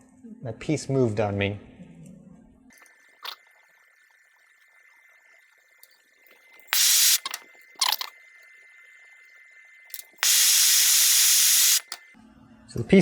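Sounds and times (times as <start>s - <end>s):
loud hiss bursts: 6.7s - 7.4s, 10.0s - 12.0s.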